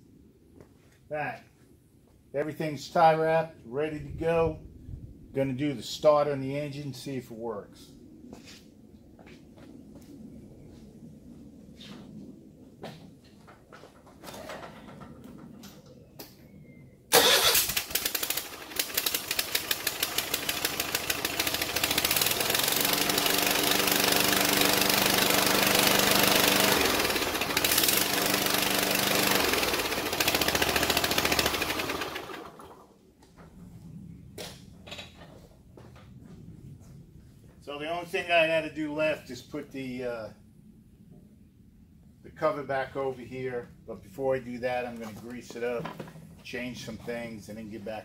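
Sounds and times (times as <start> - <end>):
mower engine running: 17.1 - 32.8.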